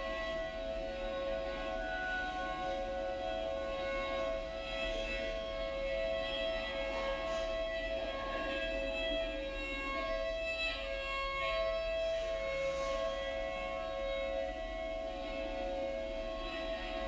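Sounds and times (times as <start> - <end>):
warning siren steady tone: 0.0 - 17.0.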